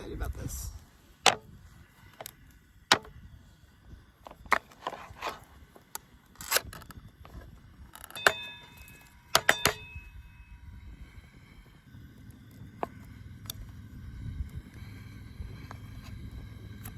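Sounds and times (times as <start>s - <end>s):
struck metal ringing: 8.1s - 10.6s.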